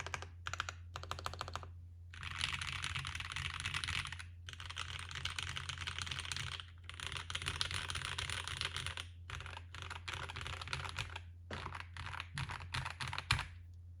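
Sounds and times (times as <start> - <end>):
mechanical keyboard typing: 0.0 - 13.6.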